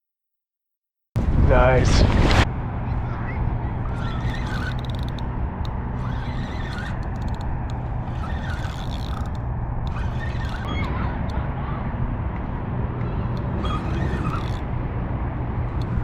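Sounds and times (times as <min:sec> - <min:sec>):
low mechanical hum: 0:01.2 - 0:16.0
rapid clicking: 0:03.8 - 0:11.3.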